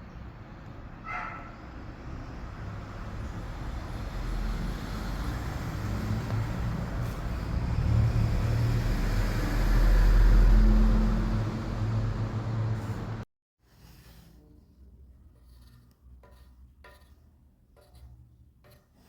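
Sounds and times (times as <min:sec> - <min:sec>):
vehicle engine rumbling: 0:03.9 - 0:13.2.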